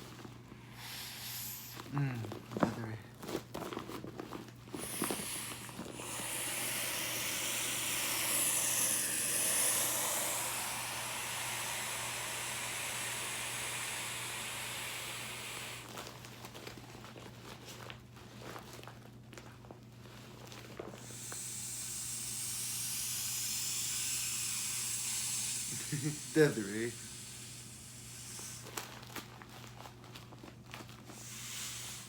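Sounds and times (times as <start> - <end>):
air hissing from beach ball valve: 0.6 - 1.9, 4.7 - 15.9, 21.0 - 28.9, 31.1 - 32.0.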